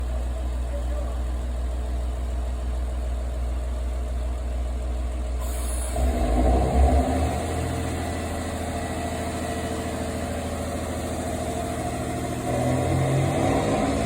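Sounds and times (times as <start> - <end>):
diesel train engine: 0.0 - 14.0
air hiss: 5.4 - 6.0.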